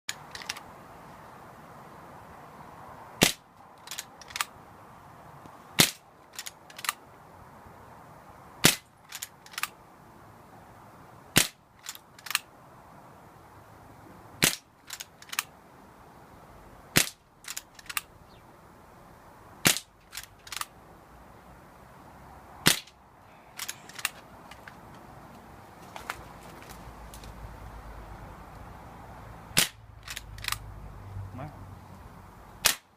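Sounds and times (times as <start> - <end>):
sharp clicks: 0.1 - 0.6, 3.2 - 4.5, 5.4 - 7.0, 8.6 - 9.8, 11.4 - 12.5, 14.4 - 15.5, 17.0 - 18.1, 19.6 - 20.7, 23.6 - 25.4, 29.6 - 30.7.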